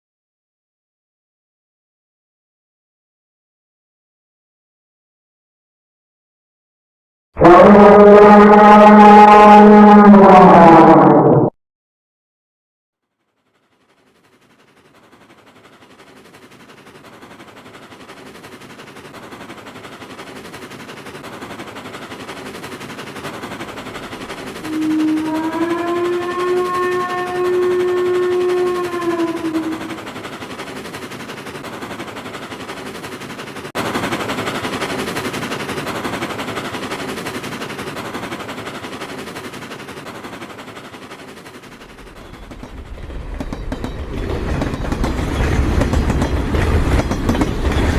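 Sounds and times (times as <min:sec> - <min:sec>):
steam whistle: 0:07.4 - 0:11.0, 0:24.5 - 0:30.1
deep train rumble: 0:07.4 - 0:11.3, 0:13.2 - 0:47.9
steam train chuffing: 0:13.1 - 0:47.9.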